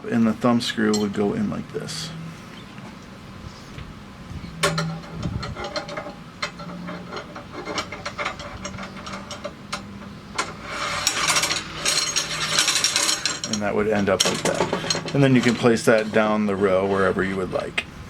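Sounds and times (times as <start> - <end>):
metal clinks and scraping: 0.8 - 1.4, 4.5 - 16.3.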